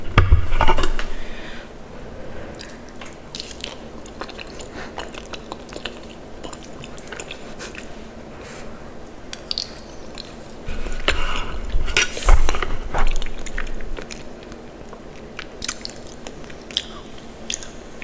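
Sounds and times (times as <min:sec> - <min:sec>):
person chewing food: 0:02.5 - 0:18.0
clicky mouth sounds: 0:09.3 - 0:10.3, 0:13.4 - 0:17.8.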